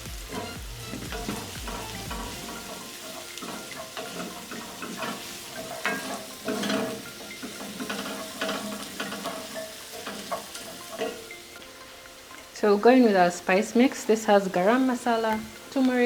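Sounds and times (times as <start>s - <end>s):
onions sizzling in a pan: 0.0s - 16.0s
utensil scraping a pan: 0.3s - 11.5s.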